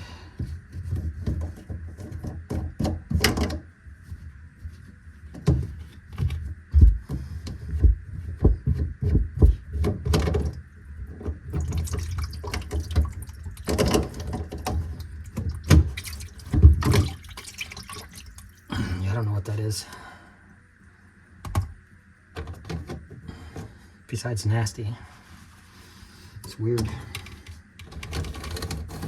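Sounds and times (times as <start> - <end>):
knocks and clunks of drain pipes: 0.4 - 3.7, 5.3 - 18.9
water dripping and splashing: 11.5 - 18.7.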